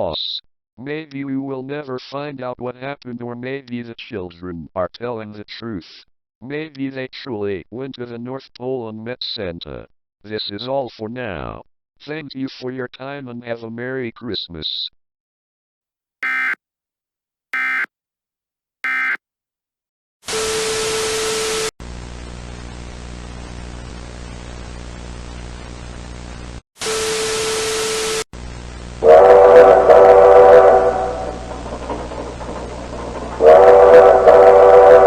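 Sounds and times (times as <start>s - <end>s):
warbling data bursts: 16.2s - 16.6s, 17.6s - 17.9s, 18.8s - 19.2s
loud static with steady tone: 21.8s - 29.0s
steam locomotive whistle: 29.0s - 35.0s.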